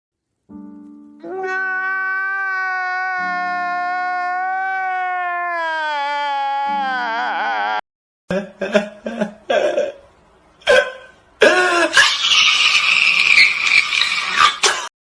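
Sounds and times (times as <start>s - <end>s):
person sobbing and wailing: 1.3s - 7.8s, 10.7s - 12.0s.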